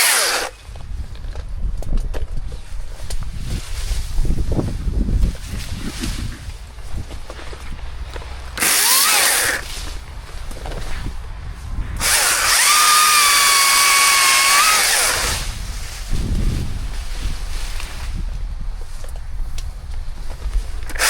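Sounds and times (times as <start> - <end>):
chainsaw revving and cutting: 0.0 - 0.6, 8.6 - 9.8, 12.0 - 15.5.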